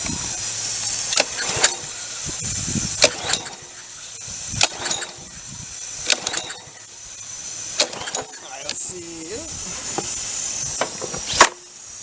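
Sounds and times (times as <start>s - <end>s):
recoil cord pulls on engine: 0.0s - 11.6s
steady high hiss: 0.0s - 12.0s.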